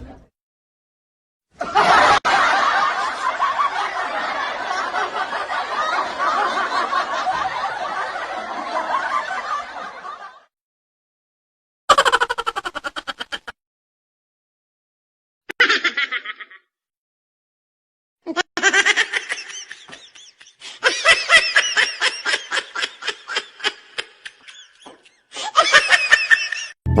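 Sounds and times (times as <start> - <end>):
high-pitched laughter: 11.9 - 13.6, 15.5 - 16.7, 18.3 - 26.8.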